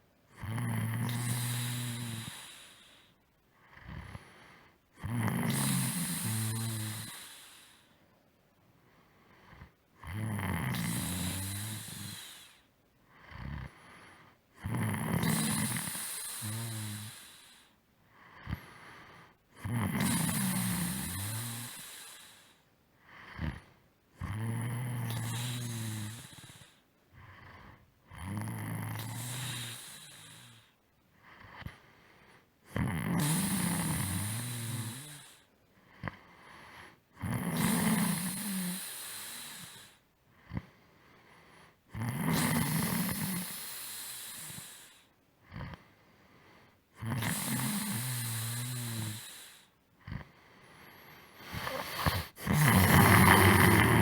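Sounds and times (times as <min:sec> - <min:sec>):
quiet breaths: 0:00.0 - 0:54.0
person snoring: 0:00.4 - 0:02.9, 0:05.0 - 0:07.6, 0:09.4 - 0:12.6, 0:14.6 - 0:17.4, 0:19.6 - 0:22.4, 0:23.2 - 0:30.6, 0:32.7 - 0:35.4, 0:41.9 - 0:44.9, 0:47.0 - 0:54.0.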